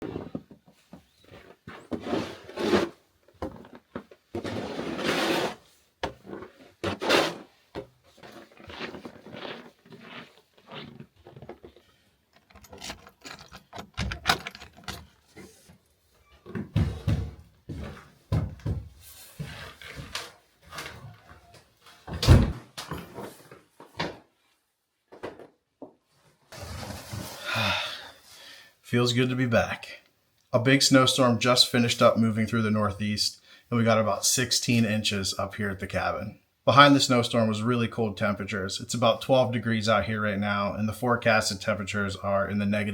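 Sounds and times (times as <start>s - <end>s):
knocks clicks and rustles of handling: 11.2s - 18.9s.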